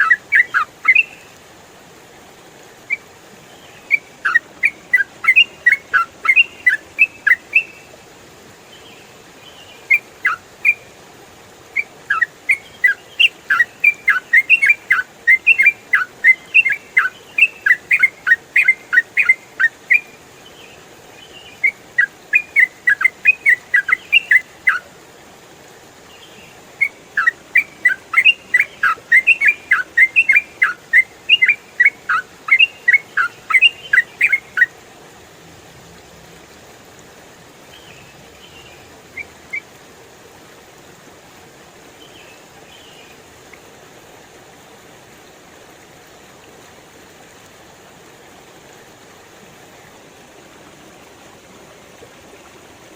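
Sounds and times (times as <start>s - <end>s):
bird singing whistled notes: 0.0s - 1.3s, 3.6s - 7.9s, 9.5s - 10.8s, 11.8s - 20.2s, 21.3s - 24.8s, 26.8s - 34.7s.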